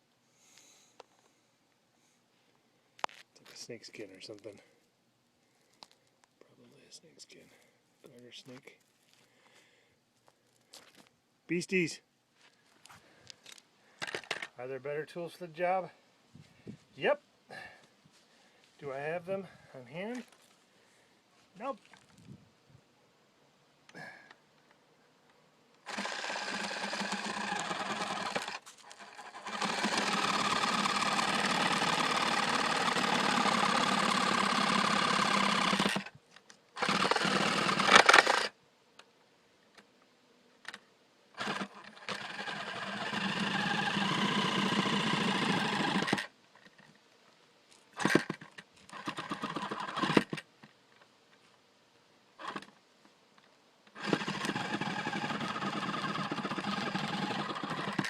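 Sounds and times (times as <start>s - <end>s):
power saw cutting wood: 25.8s - 36.1s, 36.8s - 38.5s, 41.4s - 46.3s, 48.9s - 50.4s, 54.0s - 58.0s.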